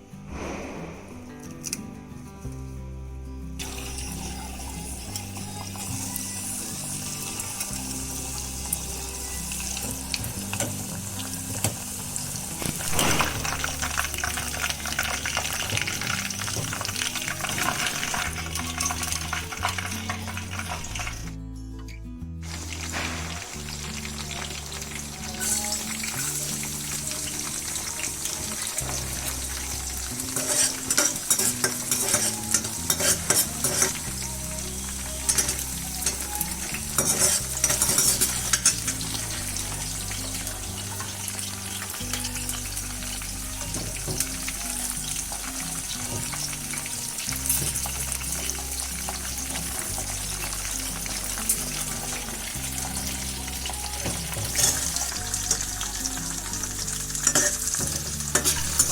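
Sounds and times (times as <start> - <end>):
soft background music: 0.0 - 58.9
food sizzling in a pan: 3.6 - 21.4, 22.4 - 58.9
spatula scraping a pan: 30.2 - 34.2, 35.2 - 39.1.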